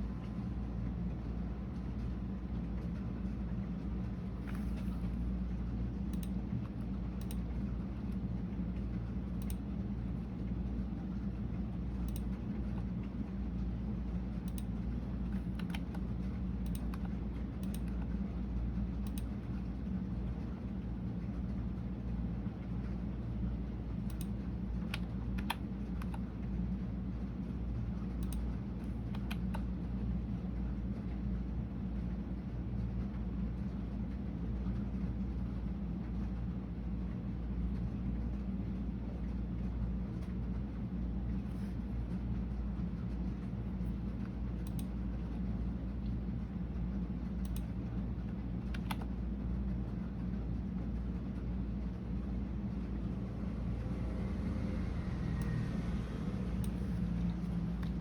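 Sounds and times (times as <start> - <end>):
low background rumble: 0.0 - 58.0
keyboard keystroke clicks: 12.0 - 12.3, 15.4 - 16.0, 16.6 - 18.0, 19.0 - 19.3, 24.1 - 26.2, 28.2 - 28.5, 29.1 - 29.7, 48.7 - 49.1.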